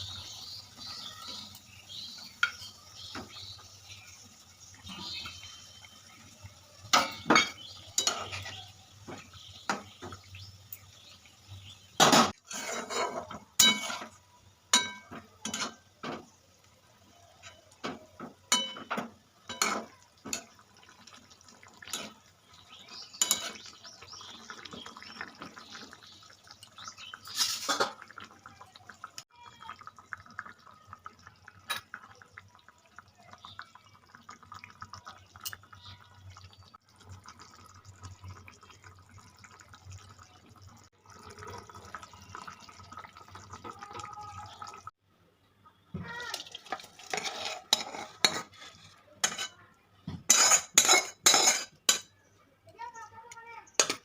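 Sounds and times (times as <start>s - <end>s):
metal knocks and clinks on pot: 6.9s - 8.5s, 17.8s - 20.5s, 49.2s - 52.1s
liquid dripping and trickling: 13.4s - 45.0s.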